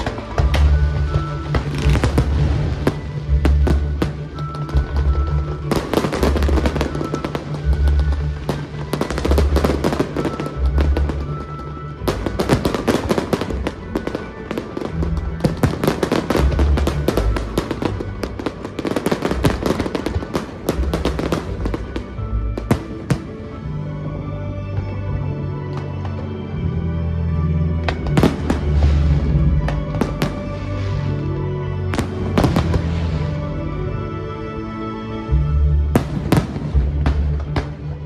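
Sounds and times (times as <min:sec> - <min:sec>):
fireworks bursting and crackling: 0:00.0 - 0:24.2, 0:27.8 - 0:34.1, 0:35.8 - 0:38.0
music with pulsing bass: 0:00.0 - 0:38.0.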